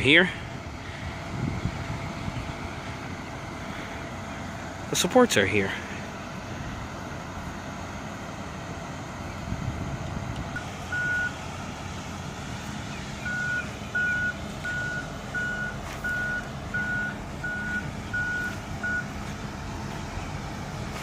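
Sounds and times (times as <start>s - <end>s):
diesel engine rumbling: 0.0s - 21.0s
backup alarm beeping: 10.6s - 11.4s, 13.2s - 19.2s.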